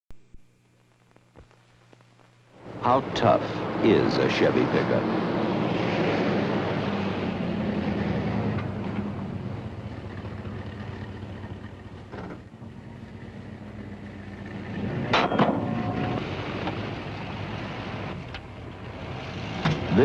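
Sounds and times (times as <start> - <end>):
truck engine running under load: 6.9 - 20.0.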